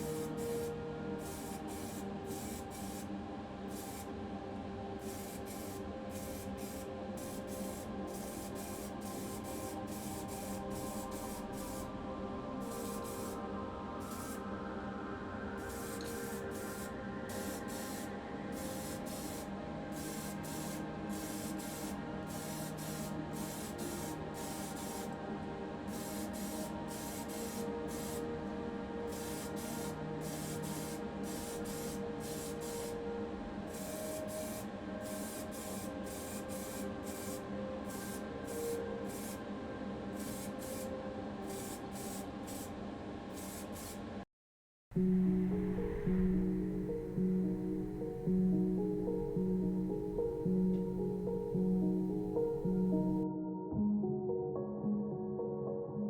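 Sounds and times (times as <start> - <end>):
spray paint hissing: 0.0 - 3.1, 3.7 - 4.1, 5.0 - 11.9, 12.6 - 13.4, 14.0 - 14.4, 15.7 - 25.2, 25.9 - 28.3, 29.1 - 33.0, 33.7 - 39.4, 40.2 - 40.9, 41.5 - 42.7, 43.3 - 44.0
steady low hum: 45.0 - 53.2.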